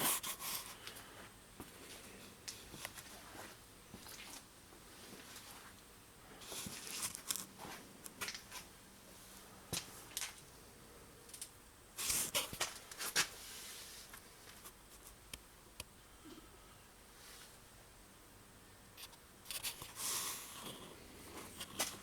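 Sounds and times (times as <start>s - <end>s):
rustling of parts: 6.4s - 8.7s.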